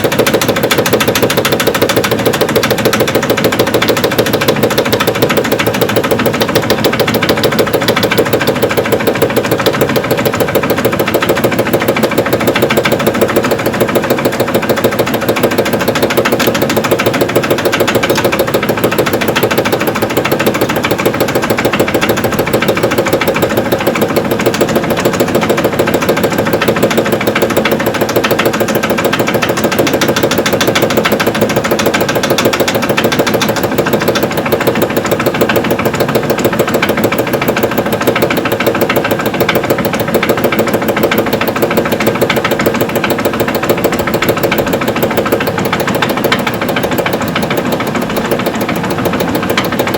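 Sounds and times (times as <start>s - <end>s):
fast knocking from drum bearing: 0.0s - 49.9s
washing machine spinning: 0.0s - 49.9s.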